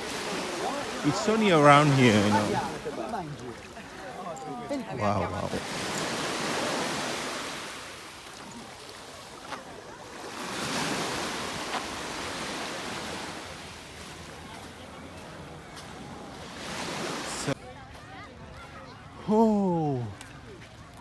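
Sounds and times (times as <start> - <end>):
sea waves washing onto beach: 0.0 - 17.6.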